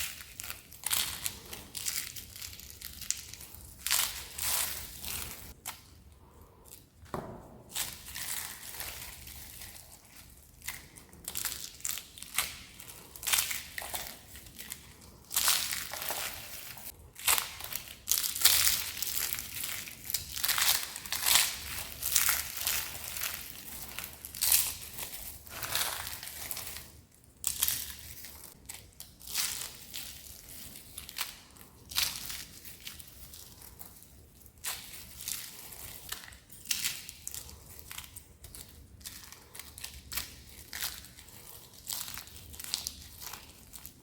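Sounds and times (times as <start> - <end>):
dry soap crunching: 0.0 - 44.0.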